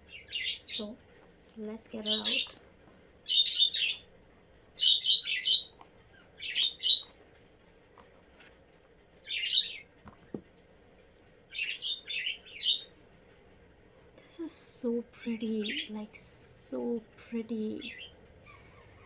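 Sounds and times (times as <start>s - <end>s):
small bird chirping: 0.0s - 7.2s, 9.2s - 10.4s, 11.4s - 13.0s, 15.3s - 16.5s, 17.5s - 19.0s
faint taps: 10.0s - 10.7s.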